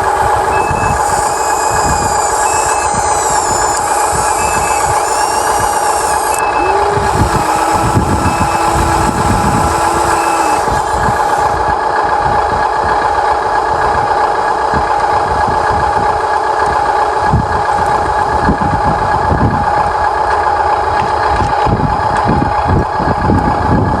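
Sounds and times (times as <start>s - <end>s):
toy excavator motors whining: 0.0s - 13.2s
short high beeps: 0.5s - 7.0s.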